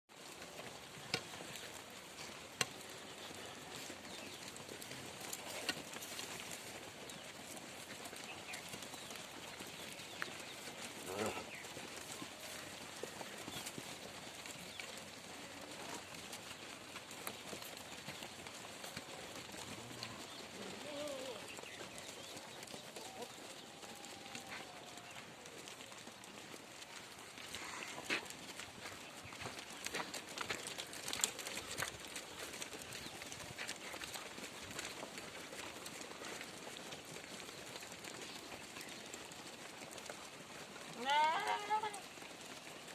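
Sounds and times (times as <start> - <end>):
hoof clicks: 0.1 - 42.9
faint animal call: 11.0 - 11.5, 19.9 - 21.5, 23.0 - 25.2.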